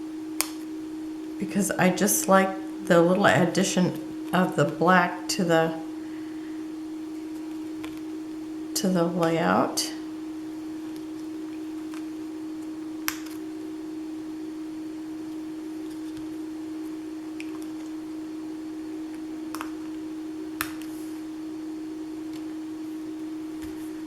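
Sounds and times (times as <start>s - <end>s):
low electrical hum: 0.0s - 24.0s.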